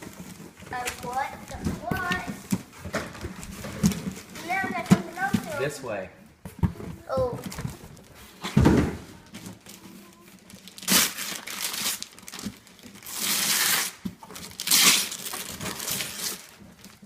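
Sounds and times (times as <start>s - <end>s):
wrapping paper tearing and rustling: 0.0s - 5.7s, 9.2s - 17.0s.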